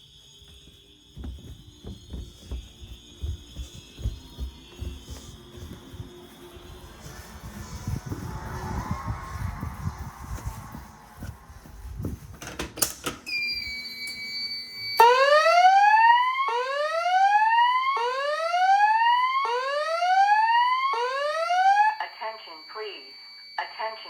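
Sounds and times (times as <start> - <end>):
steady high whine: 0.0 - 12.4
alarm speaker whoop tone: 13.4 - 24.0.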